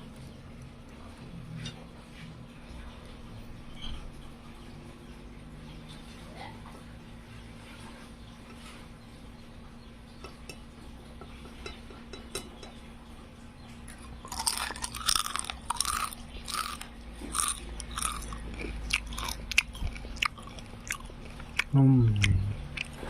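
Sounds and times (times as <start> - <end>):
crisp chewing crunches: 13.9 - 23.0.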